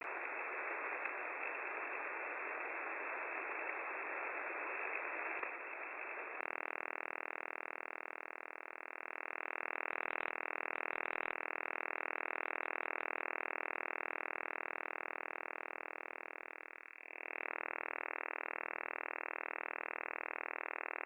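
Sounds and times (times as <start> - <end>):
rapid pulsing radio signal: 0.0 - 15.4
radio static hiss: 0.0 - 21.0.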